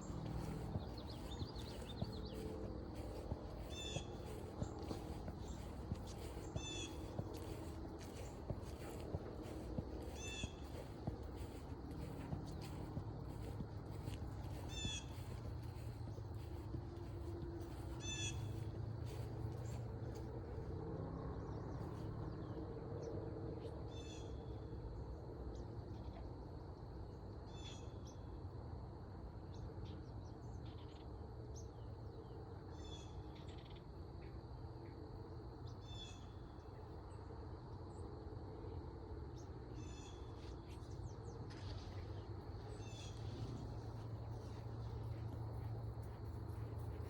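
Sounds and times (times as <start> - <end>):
bird calling: 0.0 - 19.2
steady low hum: 0.0 - 27.5, 28.1 - 47.0.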